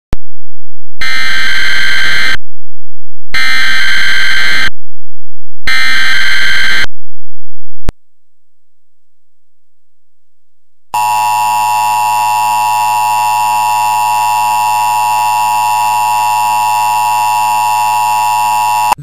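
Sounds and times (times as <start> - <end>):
screeching digital data tones: 11.0 - 19.0.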